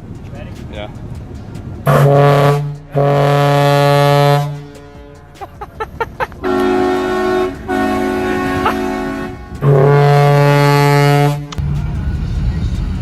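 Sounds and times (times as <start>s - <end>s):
deep ship horn blasts: 1.9s - 5.2s, 6.4s - 13.0s
higher multi-tone horn: 1.9s - 5.4s, 6.4s - 13.0s.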